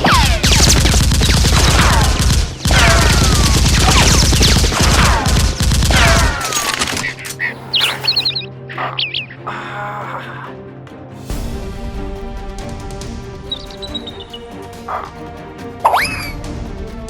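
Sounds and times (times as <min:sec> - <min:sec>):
rapid automatic gunfire: 0:00.0 - 0:07.0.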